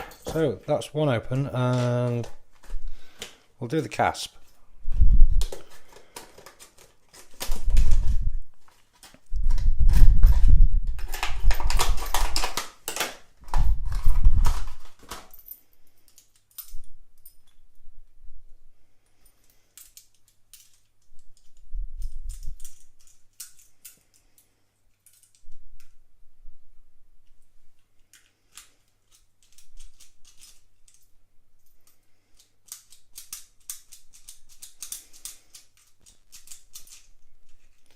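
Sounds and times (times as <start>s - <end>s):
lock-pick tools clicking in padlock: 10.9s - 17.6s, 19.4s - 25.9s, 28.0s - 37.9s.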